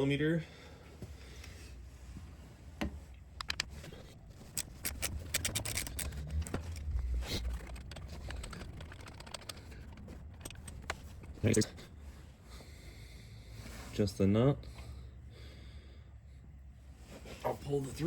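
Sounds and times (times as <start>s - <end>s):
wrench clicking on nut: 3.4s - 11.7s.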